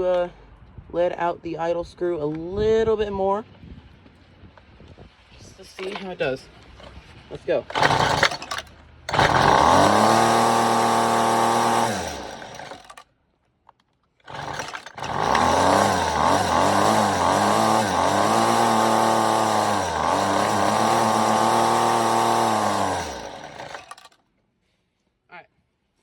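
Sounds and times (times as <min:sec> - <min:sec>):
string trimmer engine running: 0:07.7 - 0:13.0, 0:14.3 - 0:24.2.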